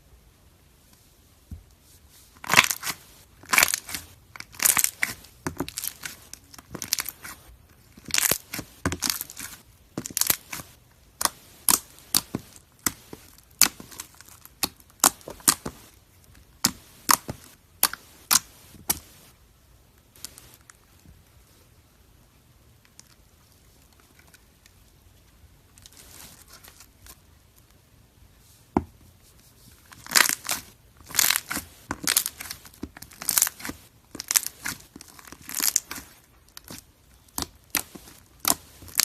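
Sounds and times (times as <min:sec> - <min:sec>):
slime crackling and popping: 0:02.4 - 0:15.7, 0:16.3 - 0:19.0, 0:29.9 - 0:39.0.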